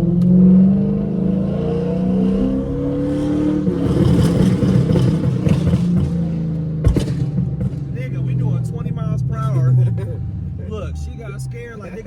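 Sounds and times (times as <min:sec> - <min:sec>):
car engine burbling: 0:00.0 - 0:12.0.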